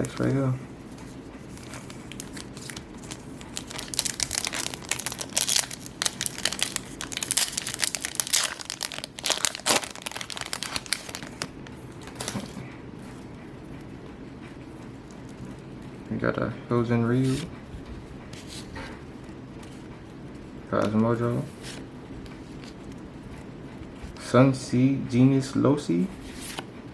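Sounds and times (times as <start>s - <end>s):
wrappers crinkling being torn open: 0.0s - 0.4s, 1.5s - 12.6s.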